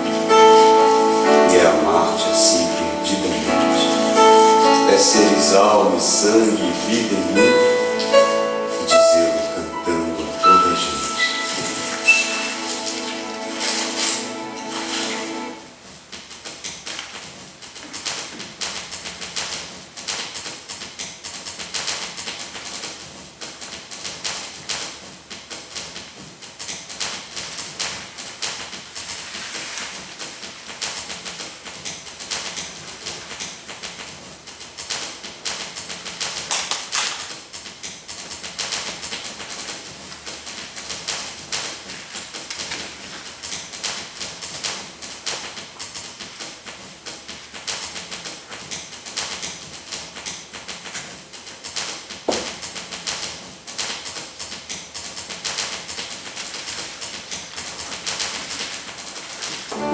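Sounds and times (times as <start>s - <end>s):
paper rustling and crumpling: 28.9s - 30.8s.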